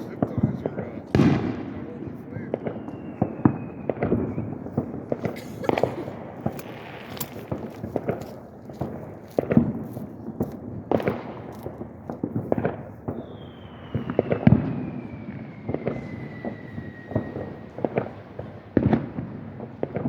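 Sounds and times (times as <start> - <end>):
fireworks booms and bangs: 0.0 - 20.0
falling firework whistle: 2.4 - 7.6, 12.5 - 20.0.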